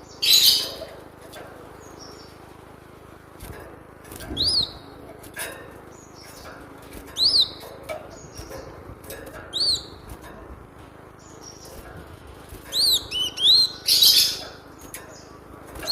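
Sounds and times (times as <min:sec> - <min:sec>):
bird high arched calls: 0:00.0 - 0:01.0, 0:12.7 - 0:14.6.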